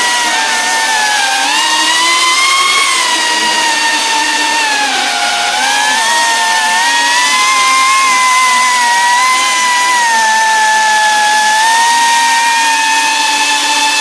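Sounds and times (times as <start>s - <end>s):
drone motors whining: 0.0s - 14.0s.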